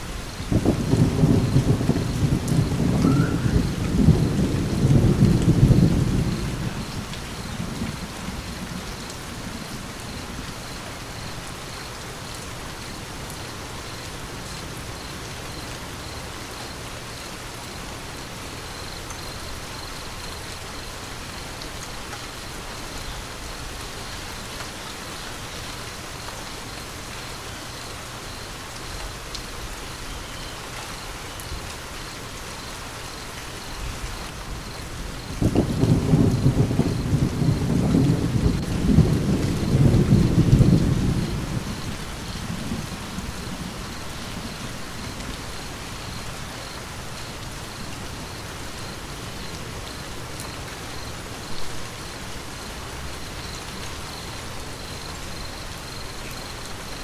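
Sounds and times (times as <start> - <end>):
steady rain falling: 0.0 - 57.0
thunder rumbling: 0.1 - 11.3, 33.8 - 50.3.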